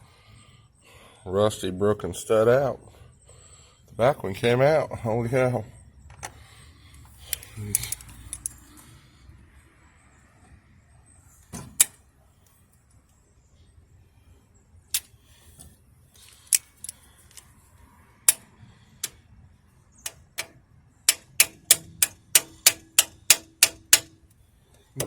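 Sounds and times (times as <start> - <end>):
hand tools tapping metal: 20.0 - 24.2.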